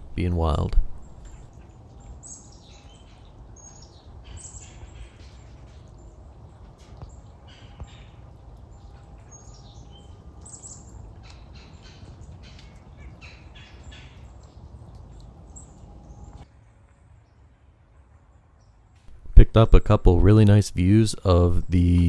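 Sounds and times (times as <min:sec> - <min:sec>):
low outdoor rumble: 0:00.0 - 0:02.0
birds chirping: 0:00.0 - 0:16.4.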